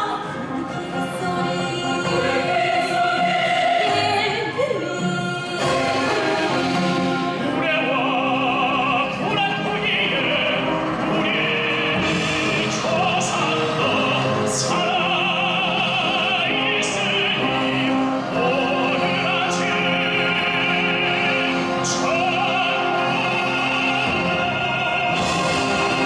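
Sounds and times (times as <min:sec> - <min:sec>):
military concert band: 0:00.0 - 0:26.0
operatic solo singing: 0:00.0 - 0:26.0.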